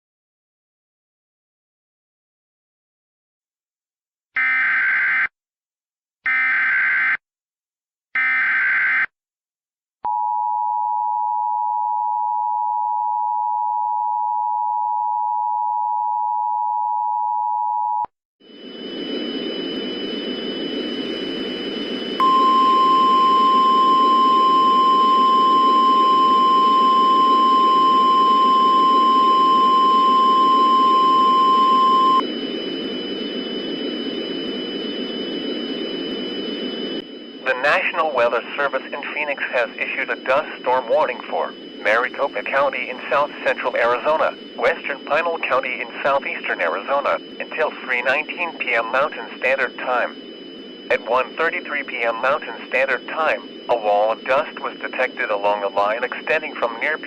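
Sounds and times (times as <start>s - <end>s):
steady weather radio alert tone: 18.5s - 57.0s
harsh two-tone attention signal: 21.5s - 32.9s, 36.5s - 50.2s, 50.8s - 57.0s
radio static hiss: 37.4s - 50.2s, 50.9s - 57.0s.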